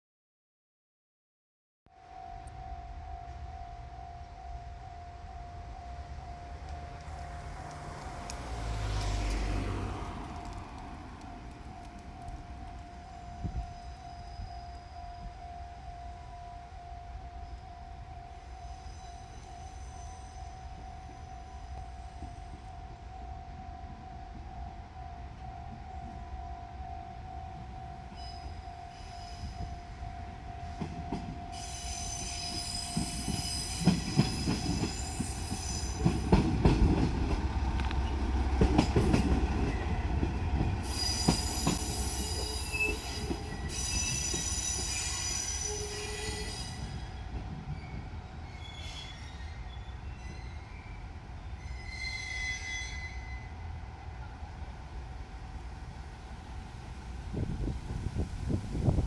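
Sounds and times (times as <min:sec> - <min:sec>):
crossing warning tone: 0:01.9 - 0:59.0
railcar low rumble: 0:01.9 - 0:59.0
wheels clicking over rail joints: 0:05.3 - 0:16.5, 0:25.3 - 0:52.0
train wheels squealing: 0:13.0 - 0:15.5, 0:18.3 - 0:22.8, 0:28.1 - 0:30.0, 0:30.7 - 0:37.1, 0:38.0 - 0:53.7.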